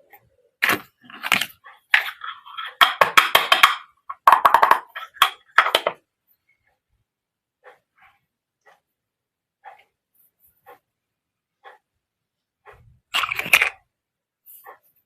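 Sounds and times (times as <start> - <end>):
toy kitchen pieces clacking: 0.6 - 6.0, 13.1 - 13.9.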